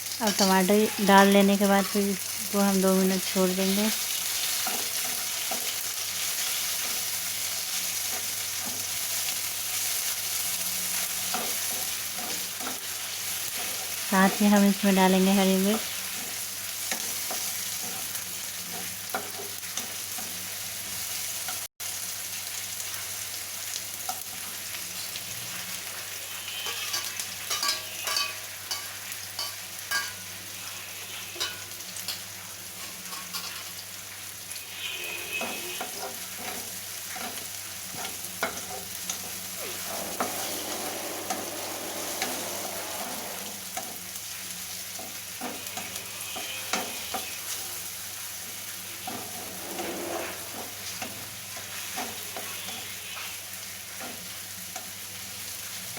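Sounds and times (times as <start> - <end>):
vegetables sizzling in hot oil: 0.0 - 55.9
spatula scraping pan: 11.0 - 14.4, 25.5 - 32.2, 34.6 - 44.1, 45.0 - 47.9, 48.9 - 54.3.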